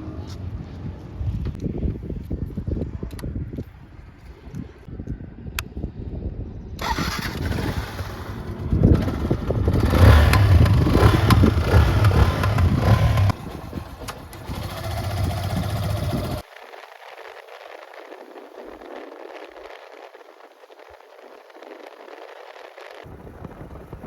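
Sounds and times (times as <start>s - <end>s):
motorcycle engine running: 6.8s - 16.4s.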